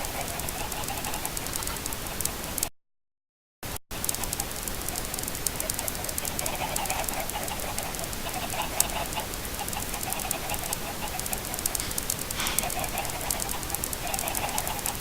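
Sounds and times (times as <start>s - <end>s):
chickens clucking: 0.0s - 2.5s, 4.0s - 15.0s
crackling hiss of clicks: 0.0s - 2.7s, 3.6s - 15.0s.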